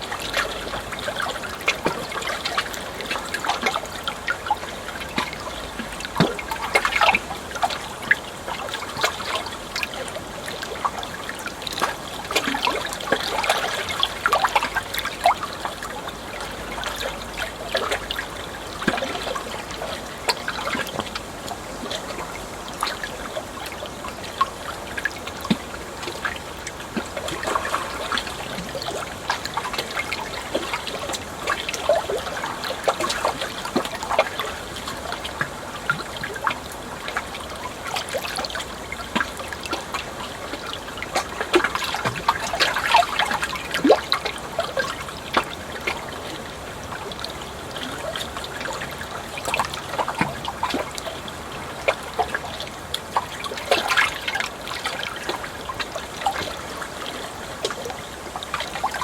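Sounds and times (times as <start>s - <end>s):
water trickling and splashing: 0.0s - 59.0s.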